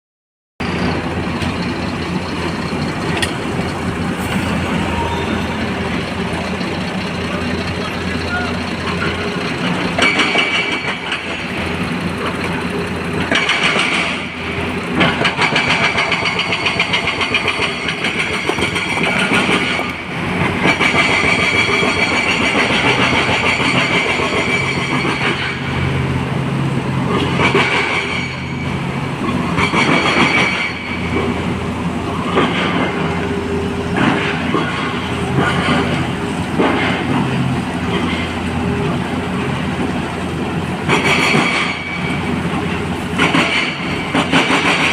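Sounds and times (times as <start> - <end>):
excavator diesel engine whining: 0.6 - 44.9.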